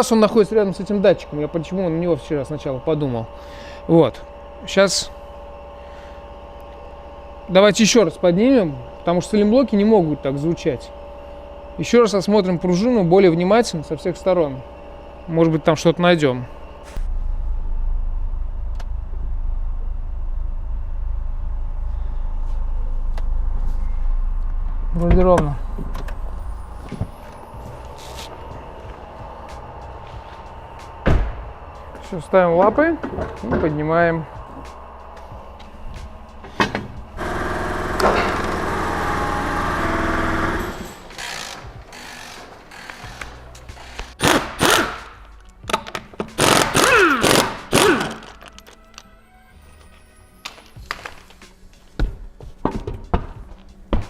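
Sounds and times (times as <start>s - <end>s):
electric pump motor running: 0.0s - 17.0s, 24.8s - 45.3s, 46.4s - 48.5s
low mechanical hum: 0.0s - 54.0s.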